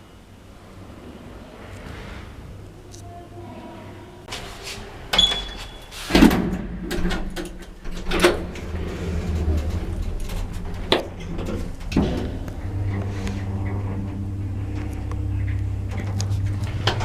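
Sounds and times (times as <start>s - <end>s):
lift humming: 0.0s - 6.1s, 6.7s - 17.0s
lift doors clunking: 4.3s - 17.0s.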